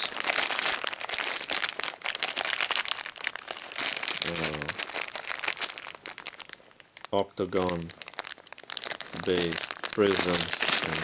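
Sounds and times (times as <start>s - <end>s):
plastic bags crinkling: 0.0s - 11.0s.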